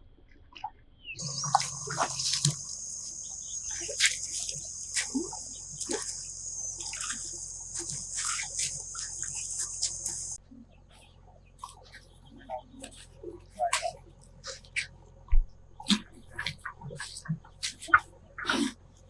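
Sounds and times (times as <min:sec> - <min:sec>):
water splashing and dripping: 0:00.5 - 0:10.4
water running: 0:01.2 - 0:10.4.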